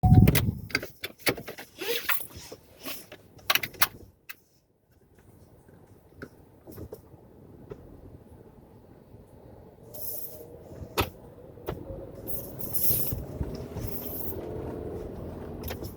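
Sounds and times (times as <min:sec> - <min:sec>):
car interior low rumble: 0:00.0 - 0:01.0, 0:10.5 - 0:15.9.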